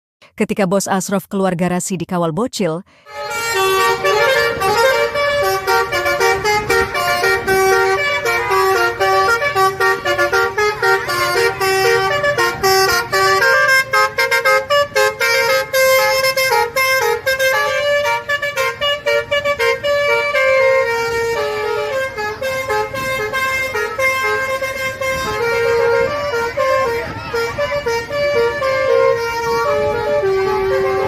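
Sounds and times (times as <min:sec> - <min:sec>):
multi-tone bus horn melody: 0:02.9 - 0:31.0.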